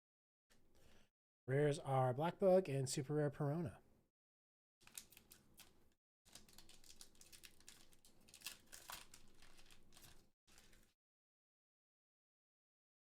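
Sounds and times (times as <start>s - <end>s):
foil wrapper crinkling and tearing: 4.8s - 11.0s.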